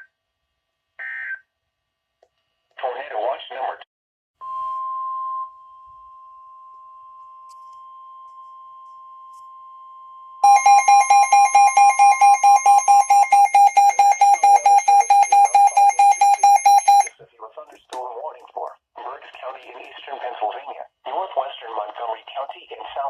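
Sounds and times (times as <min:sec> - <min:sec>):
steady alarm tone: 0:04.4 - 0:17.1
rapid electronic alarm beeps: 0:10.4 - 0:17.1.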